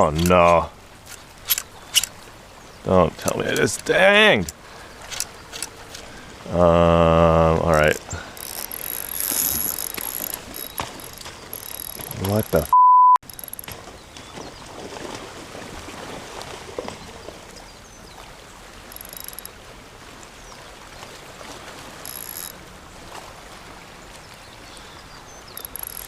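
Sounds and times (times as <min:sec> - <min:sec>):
shallow water washing on rocks: 0:00.0 - 0:06.8, 0:07.4 - 0:12.6, 0:13.6 - 0:17.5
faint high-pitched rattles: 0:07.9 - 0:13.8, 0:18.9 - 0:19.5, 0:22.0 - 0:22.6, 0:25.6 - 0:26.0.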